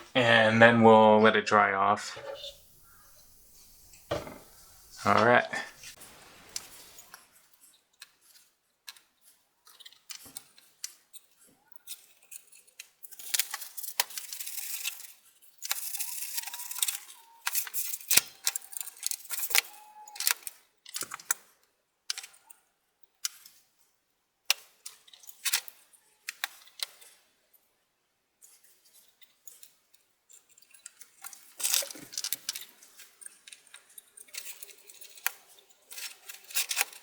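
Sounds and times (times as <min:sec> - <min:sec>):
cotton swabs scrubbing: 0:02.1 - 0:07.3.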